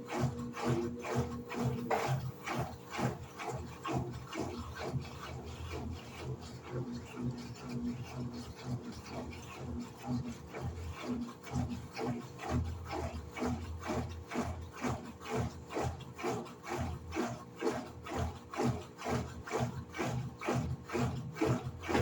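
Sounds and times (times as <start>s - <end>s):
washing machine motor humming: 0.0s - 3.1s, 21.4s - 22.0s
water and clothes swishing: 1.5s - 2.4s, 21.5s - 22.0s.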